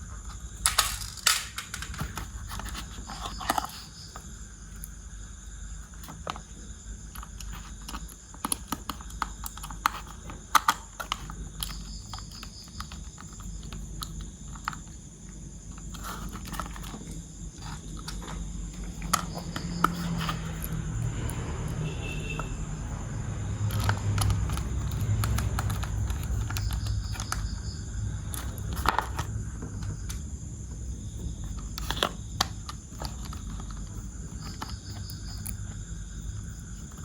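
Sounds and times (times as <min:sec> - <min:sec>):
steady low hum: 0:00.0 - 0:37.0
plastic parts clicking: 0:00.6 - 0:04.3, 0:07.1 - 0:15.0, 0:15.7 - 0:21.4, 0:23.6 - 0:27.5, 0:28.3 - 0:30.2, 0:31.5 - 0:35.6.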